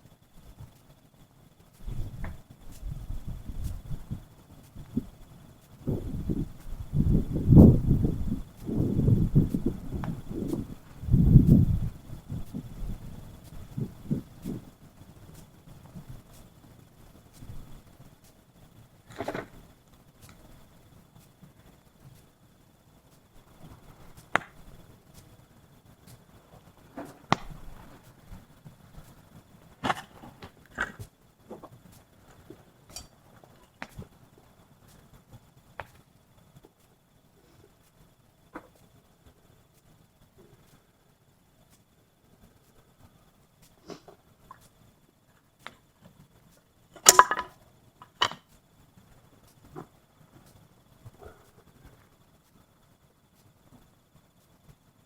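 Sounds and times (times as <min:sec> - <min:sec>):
wood fire crackling and popping: 0:00.0 - 0:52.7.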